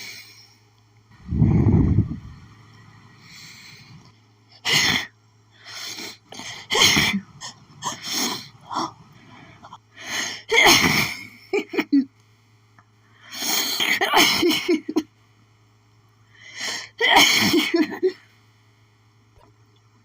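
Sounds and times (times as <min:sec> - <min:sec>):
woman sneezing: 0:10.5 - 0:11.2.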